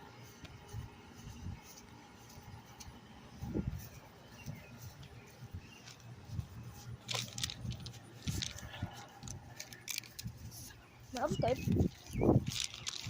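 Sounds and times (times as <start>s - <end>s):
keys jingling: 7.0s - 10.4s
bag rustling: 7.0s - 13.0s.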